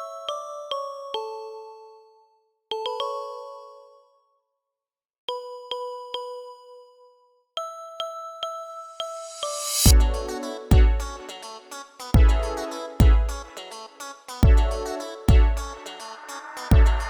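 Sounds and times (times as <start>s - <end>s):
struck ringing notes music: 9.7s - 17.0s.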